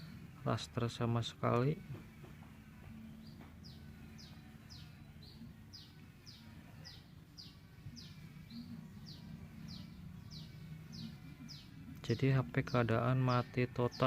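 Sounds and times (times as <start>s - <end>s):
bird chirping: 2.8s - 14.0s.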